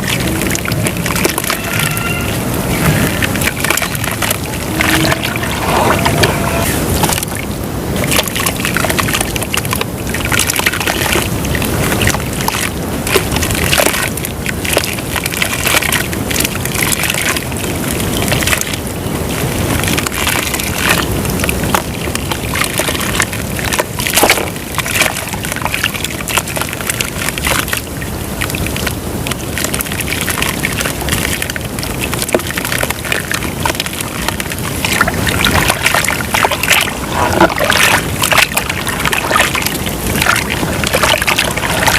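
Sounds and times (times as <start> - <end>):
dirt crumbling in water: 19.8 - 41.9.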